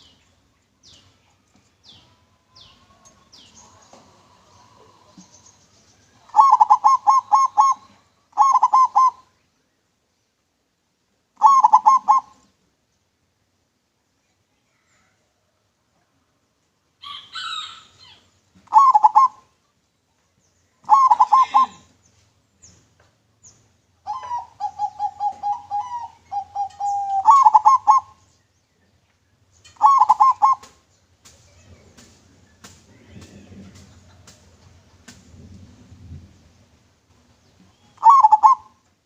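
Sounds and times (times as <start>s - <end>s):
dove cooing: 6.2s - 9.3s, 11.4s - 12.4s, 18.6s - 19.5s, 20.8s - 21.9s, 24.0s - 28.3s, 29.8s - 30.8s, 37.8s - 38.8s.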